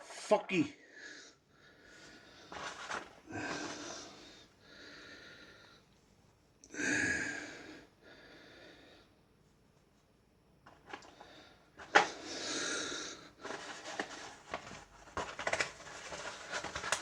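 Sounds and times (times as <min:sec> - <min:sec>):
man breathing heavily through nose: 0:00.8 - 0:05.9, 0:06.7 - 0:09.2, 0:10.9 - 0:14.7.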